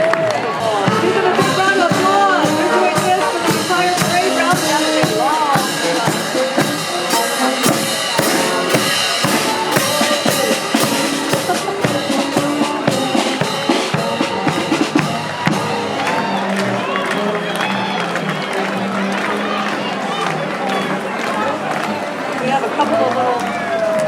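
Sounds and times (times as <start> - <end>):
marching band playing: 0.0 - 24.0
snare and bass drums beating: 0.8 - 17.7.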